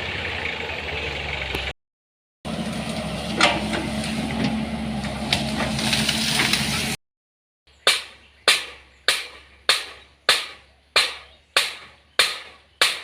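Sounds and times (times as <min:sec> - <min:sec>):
engine running: 0:00.0 - 0:01.8, 0:02.5 - 0:07.0.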